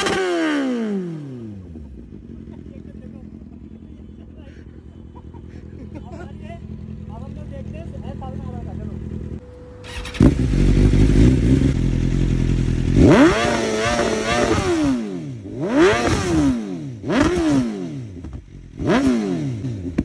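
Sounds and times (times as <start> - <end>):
motorcycle engine revving: 0.0 - 20.0
motorcycle engine idling: 1.4 - 14.2, 18.0 - 18.8.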